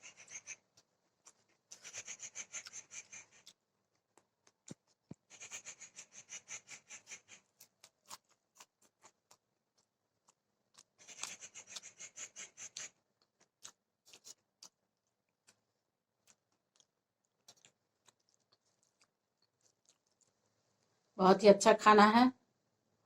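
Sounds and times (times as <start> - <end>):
crunchy food being chewed: 0.0 - 21.0
mouth clicks: 10.8 - 13.0.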